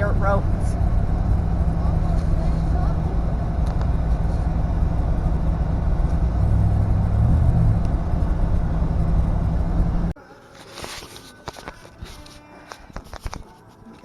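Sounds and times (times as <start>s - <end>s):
truck engine and road rumble: 0.0s - 10.2s.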